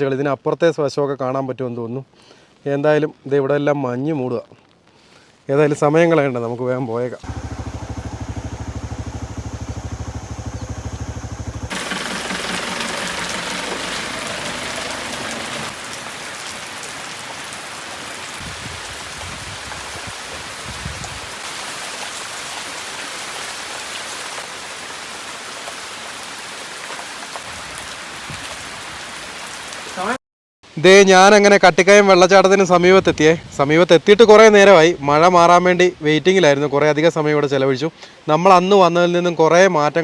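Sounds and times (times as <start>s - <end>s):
vehicle engine idling: 7.2s - 15.8s
steady rain falling: 11.7s - 30.2s.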